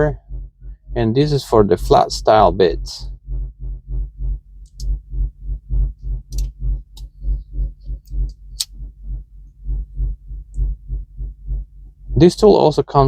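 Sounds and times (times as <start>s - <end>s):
background music with low pulse: 0.0s - 13.0s
multitool clicks: 4.6s - 5.0s.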